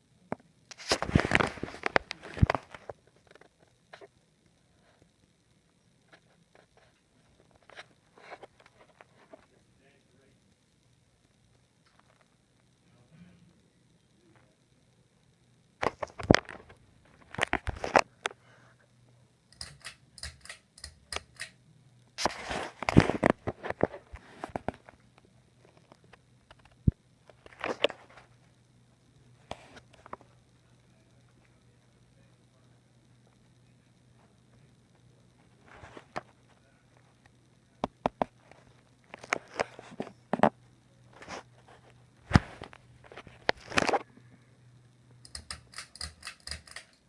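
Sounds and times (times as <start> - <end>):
faint low hum: 0.0 - 47.0
sharp clicks and knocks: 19.5 - 21.6, 45.2 - 47.0.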